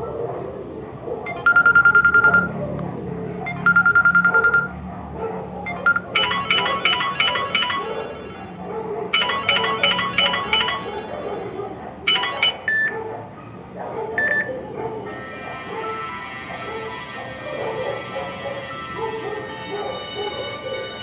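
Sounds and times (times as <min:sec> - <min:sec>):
phone ringtone: 0:01.3 - 0:02.6, 0:03.4 - 0:04.8, 0:05.7 - 0:11.4, 0:12.1 - 0:13.0, 0:14.2 - 0:14.6.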